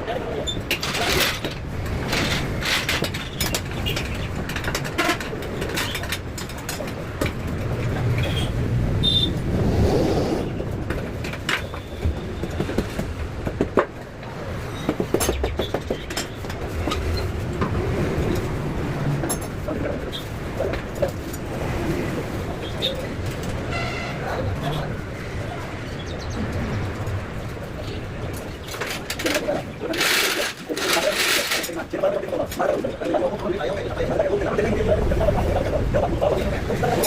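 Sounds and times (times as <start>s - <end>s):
irregular clicks and knocks: 0.6s - 8.2s.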